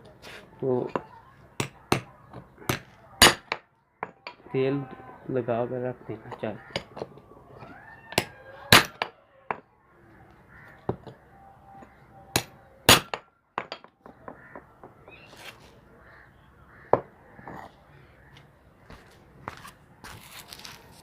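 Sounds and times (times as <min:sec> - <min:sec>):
hammer and chisel on metal: 0:00.8 - 0:04.5, 0:11.8 - 0:13.9.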